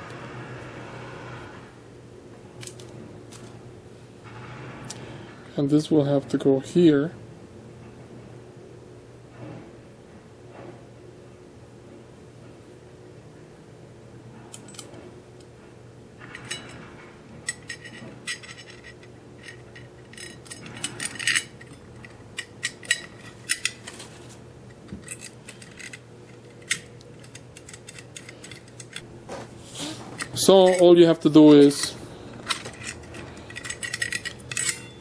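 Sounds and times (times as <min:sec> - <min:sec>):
faint steady hum: 0:00.0 - 0:35.0
small metal parts clinking: 0:16.2 - 0:24.0, 0:24.7 - 0:29.1, 0:30.2 - 0:35.0.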